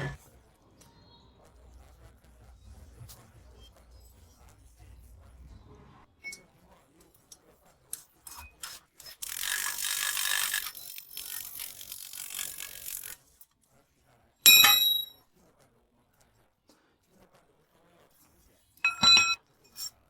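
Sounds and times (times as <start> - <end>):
sharp metallic clang: 14.5 - 15.2, 18.9 - 19.9
metal scraping rub: 18.9 - 20.0.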